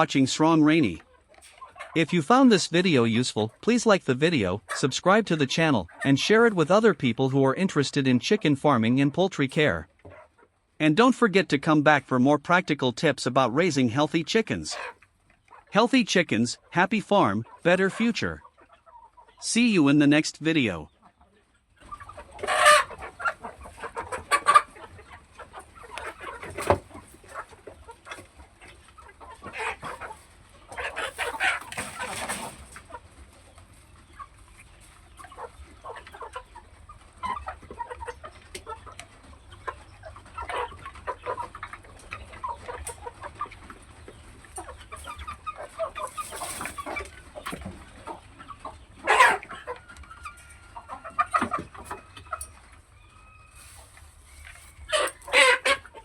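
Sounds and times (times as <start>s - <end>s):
chickens clucking: 0.0s - 56.0s
chicken squawks: 14.6s - 15.8s, 20.9s - 33.1s, 34.1s - 56.0s.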